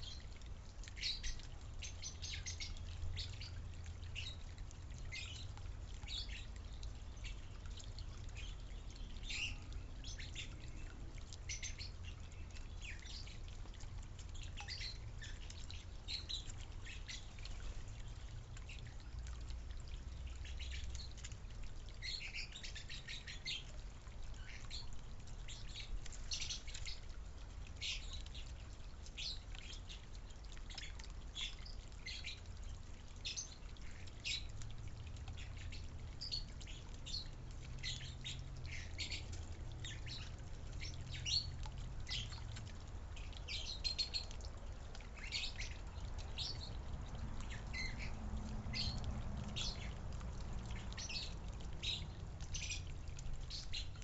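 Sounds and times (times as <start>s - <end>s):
low steady rumble: 0.0s - 54.0s
small birds chirping: 0.0s - 54.0s.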